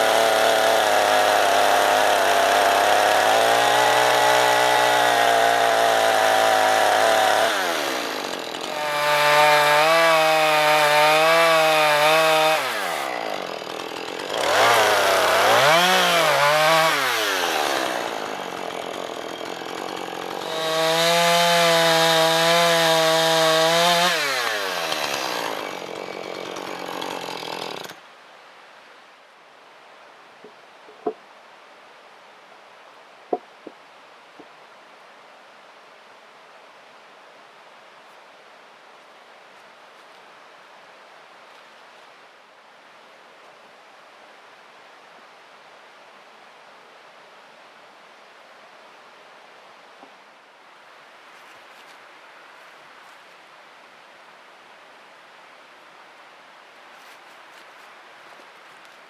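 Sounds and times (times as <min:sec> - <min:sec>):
chainsaw engine revving: 0:00.0 - 0:28.0.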